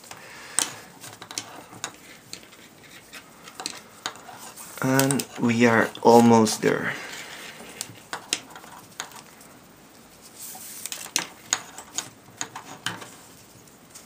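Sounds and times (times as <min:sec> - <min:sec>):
cord rustling through: 0:10.1 - 0:14.0.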